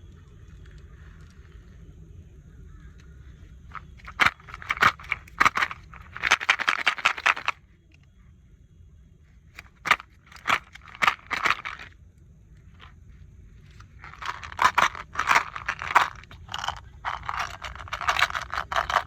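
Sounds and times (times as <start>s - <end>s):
plastic packaging crinkling: 14.0s - 19.0s.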